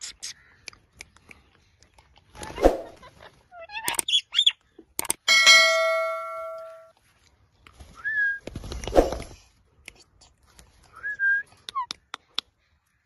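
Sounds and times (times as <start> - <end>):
metal bell ringing: 5.3 - 6.9.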